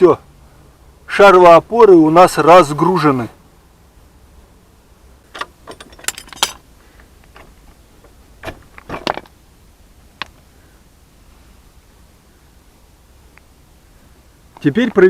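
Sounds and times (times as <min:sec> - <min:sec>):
metallic clinks and knocks: 0:05.3 - 0:06.6.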